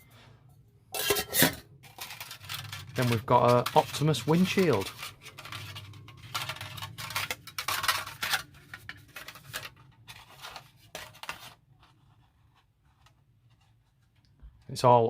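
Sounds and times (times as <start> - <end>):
metal panels crinkling and rattling: 1.0 - 11.6.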